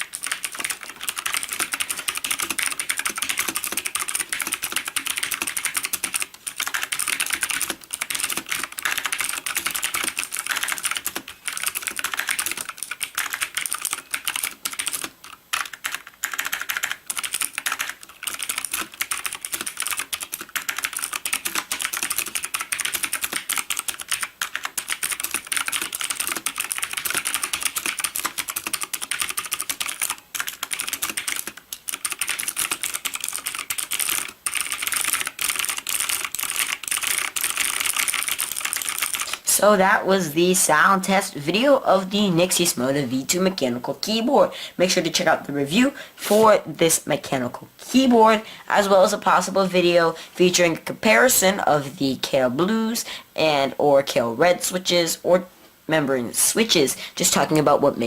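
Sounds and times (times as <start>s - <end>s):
clicky mechanical keyboard typing: 0.0s - 39.8s.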